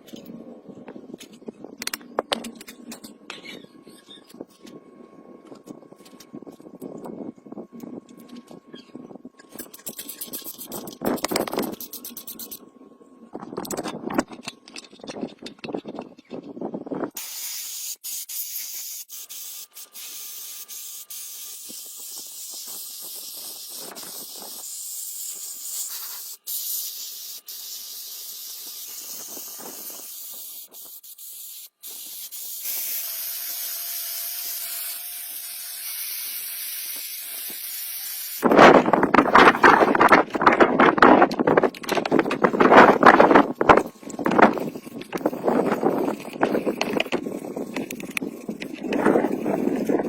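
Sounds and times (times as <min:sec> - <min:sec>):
spray gun air hiss: 0:17.2 - 0:33.8.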